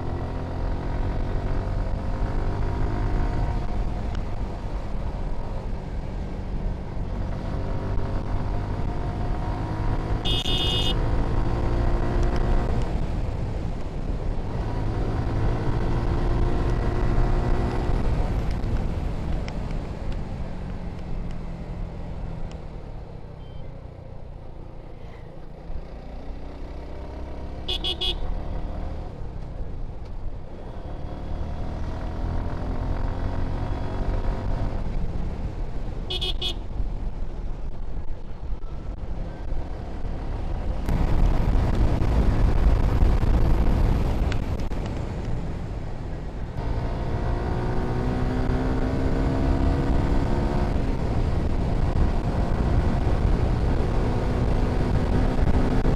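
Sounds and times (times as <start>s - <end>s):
motorcycle engine revving: 7.1s - 12.7s, 46.6s - 55.9s
vehicle horn honking: 10.2s - 11.0s, 27.7s - 28.3s, 36.1s - 36.6s.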